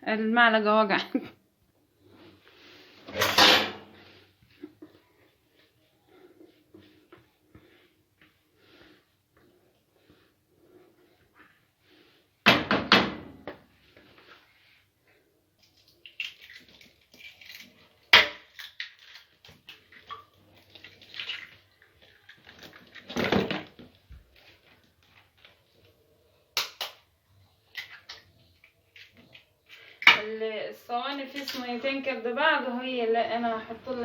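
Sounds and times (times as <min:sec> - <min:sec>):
kitchenware clattering: 0:03.1 - 0:04.0.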